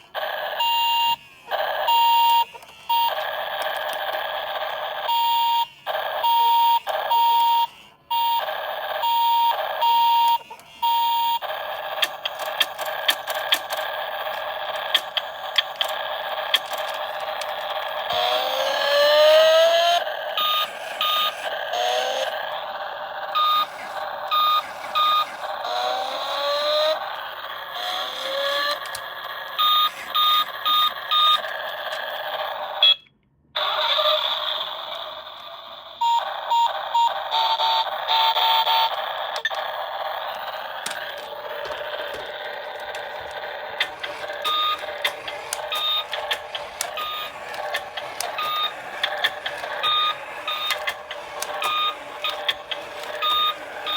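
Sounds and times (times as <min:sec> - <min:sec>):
toy car electronic beeps: 0:00.0 - 0:53.9.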